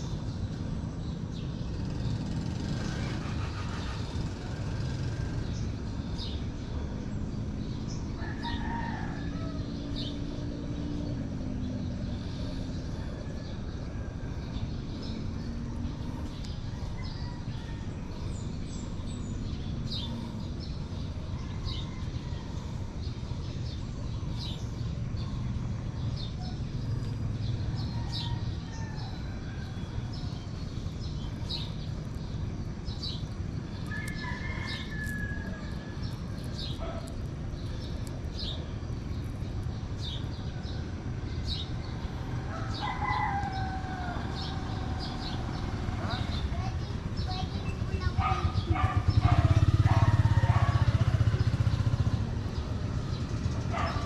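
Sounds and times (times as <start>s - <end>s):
roosters crowing: 8.0s - 14.6s, 15.4s - 18.5s, 25.7s - 31.6s, 32.8s - 38.5s, 40.4s - 46.4s, 48.2s - 54.0s.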